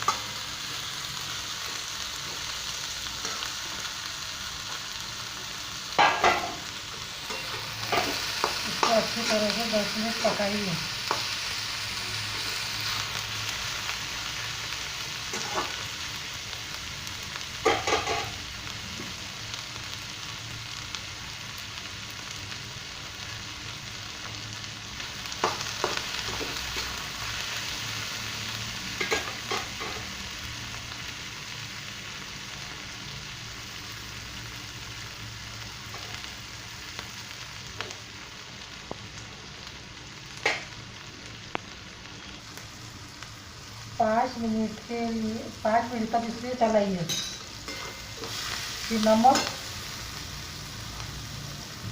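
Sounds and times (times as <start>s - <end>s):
vegetables sizzling in a frying pan: 0.0s - 51.9s.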